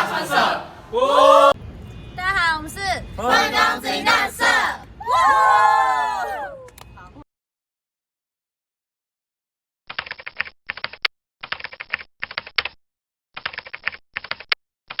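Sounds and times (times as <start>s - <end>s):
fast key typing: 9.9s - 12.8s, 13.4s - 15.0s.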